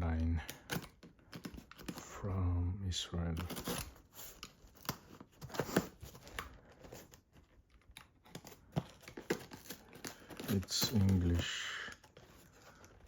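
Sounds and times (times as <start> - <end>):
package crinkling and tapping: 4.4 - 13.0.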